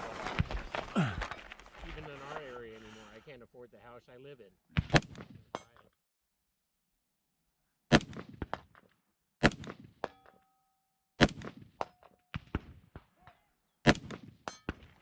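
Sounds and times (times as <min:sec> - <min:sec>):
rifle firing single shots: 0:04.8 - 0:05.8, 0:07.9 - 0:08.8, 0:09.4 - 0:10.3, 0:11.2 - 0:13.1, 0:13.8 - 0:15.0.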